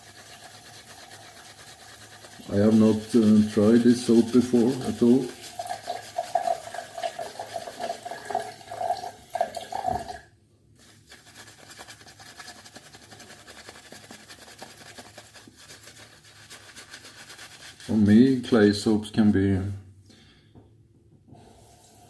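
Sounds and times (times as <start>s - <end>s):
water running from a tap: 0.0s - 10.2s.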